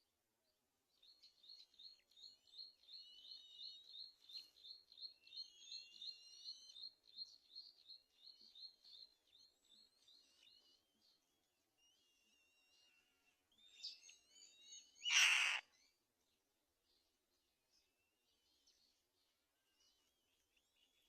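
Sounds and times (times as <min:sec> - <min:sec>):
bird whistles: 0:15.0 - 0:15.6
short high bird chirps: 0:15.0 - 0:15.6.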